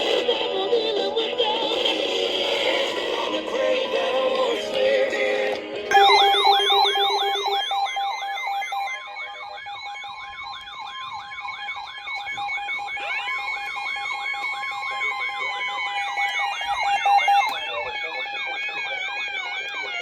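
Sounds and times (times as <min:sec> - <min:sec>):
electronic sirens yelping: 0:00.0 - 0:20.0
siren wailing: 0:01.7 - 0:05.3, 0:05.9 - 0:20.0
steady tone: 0:03.0 - 0:10.2.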